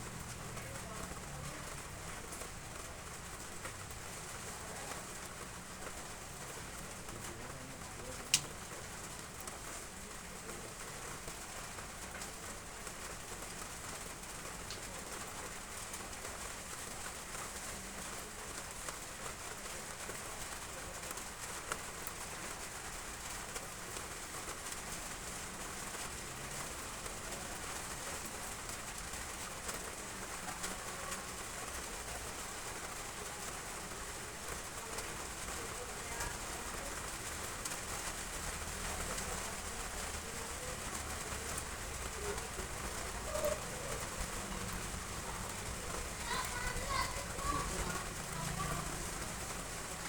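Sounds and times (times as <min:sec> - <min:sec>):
heavy rain on roof tiles: 0:00.0 - 0:50.0
dove cooing: 0:42.8 - 0:44.8.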